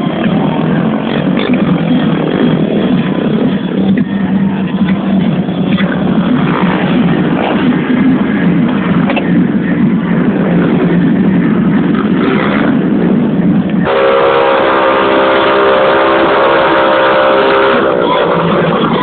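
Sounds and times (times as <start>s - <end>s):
loud blaring noise: 0.0s - 19.0s
horn chord sliding down in pitch: 13.8s - 18.4s.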